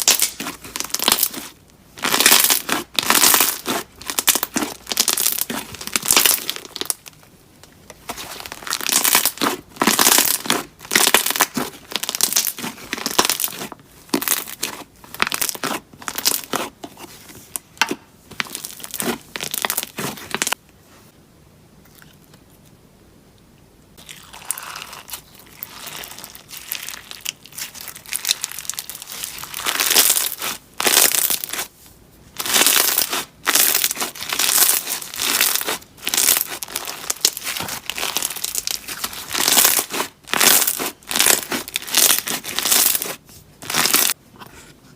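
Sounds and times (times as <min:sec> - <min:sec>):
slime squished by hand: 0:00.0 - 0:07.2, 0:08.0 - 0:16.8, 0:24.1 - 0:31.7, 0:32.4 - 0:44.2.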